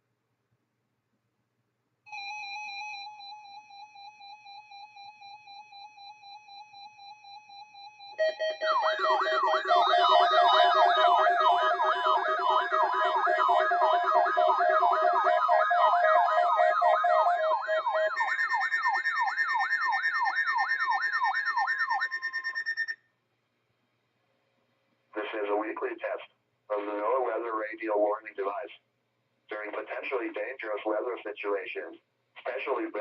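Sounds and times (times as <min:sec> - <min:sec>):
electronic sirens yelping: 0:08.0 - 0:23.0.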